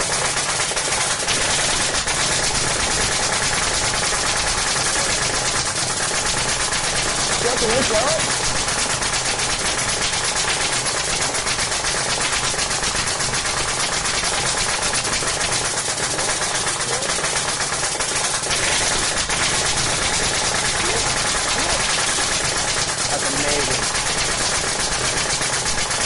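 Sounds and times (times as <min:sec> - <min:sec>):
rapid mechanical rattle: 0:00.0 - 0:26.0.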